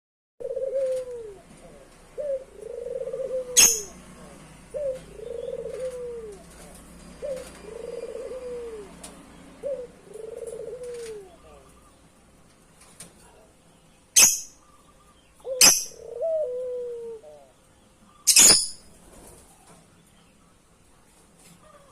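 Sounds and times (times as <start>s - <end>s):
dove cooing: 0.4s - 12.0s, 14.2s - 19.7s.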